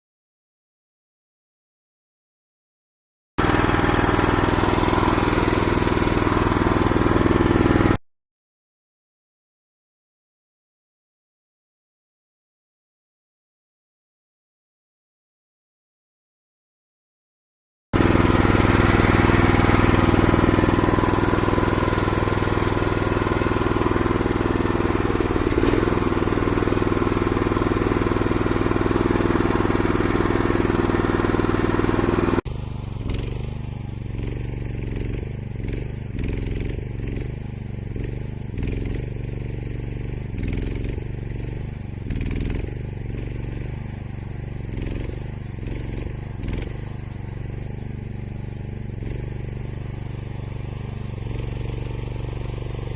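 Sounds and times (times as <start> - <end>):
loader engine running: 3.4 - 8.0, 18.0 - 52.9.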